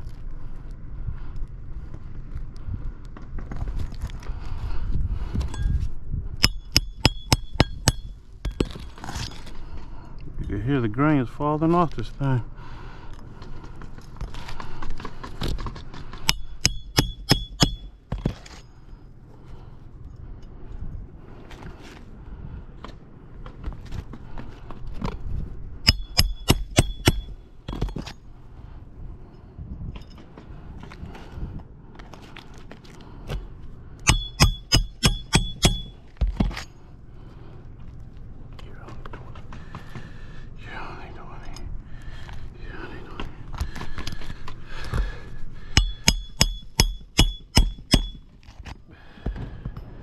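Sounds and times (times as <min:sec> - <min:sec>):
hammer striking nail: 0:06.4 - 0:08.7, 0:16.2 - 0:17.9, 0:25.9 - 0:28.0, 0:34.1 - 0:36.5, 0:45.8 - 0:48.2
tool scraping roof shingle: 0:13.7 - 0:18.6
ringing metallic strikes: 0:34.1 - 0:36.0, 0:45.8 - 0:48.2.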